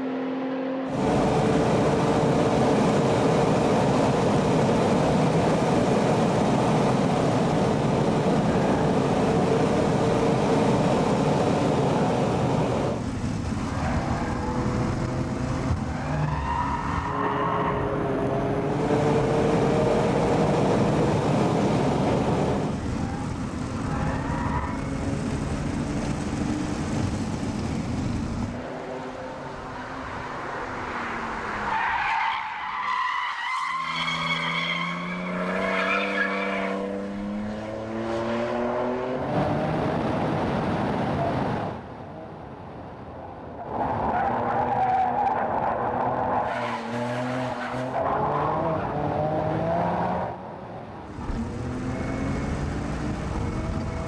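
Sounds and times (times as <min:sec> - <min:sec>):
car engine accelerating hard: 0:00.0 - 0:31.7, 0:45.5 - 0:50.4, 0:51.1 - 0:54.0.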